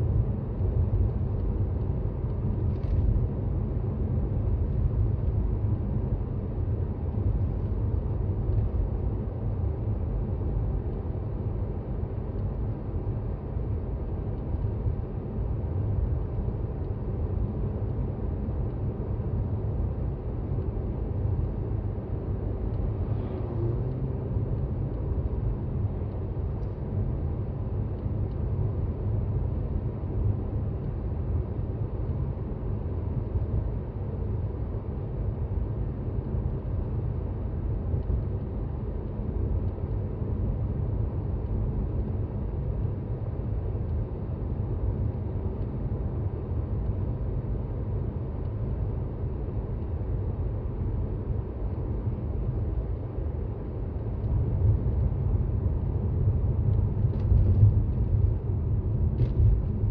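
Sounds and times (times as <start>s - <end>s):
road and drivetrain rumble: 21.4s - 27.2s, 50.3s - 59.9s.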